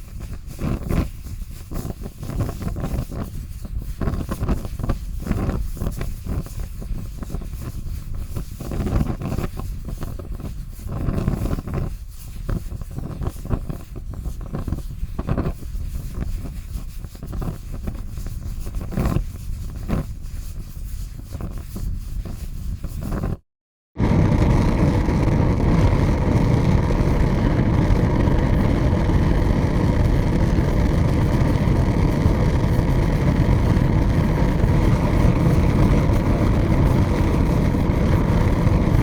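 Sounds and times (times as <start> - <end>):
fire crackling and roaring: 24.0 - 39.0.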